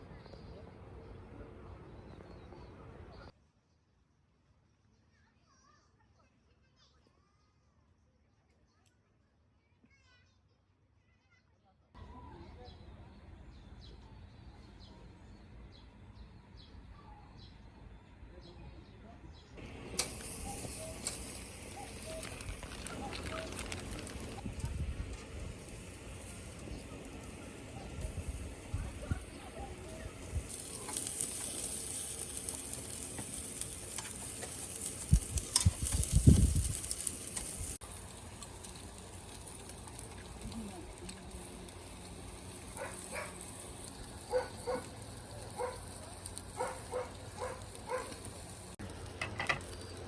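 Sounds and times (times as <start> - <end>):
food frying in hot oil: 19.6 - 50.0
low outdoor rumble: 19.6 - 50.0
bird chirping: 20.4 - 24.4.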